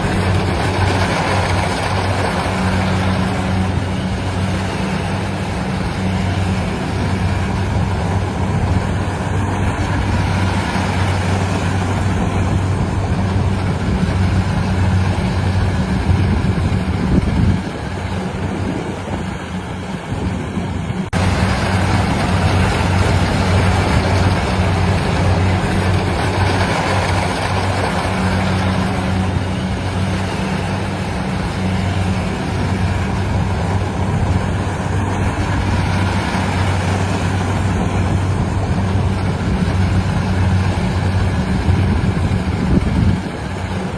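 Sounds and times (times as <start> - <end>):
harvester engine humming: 0.0 - 43.9.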